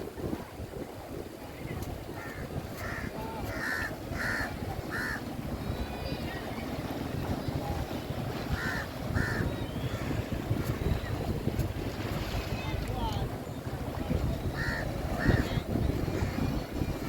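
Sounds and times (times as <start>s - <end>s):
wind buffeting microphone: 0.0s - 17.0s
bird harsh calls: 8.6s - 10.2s.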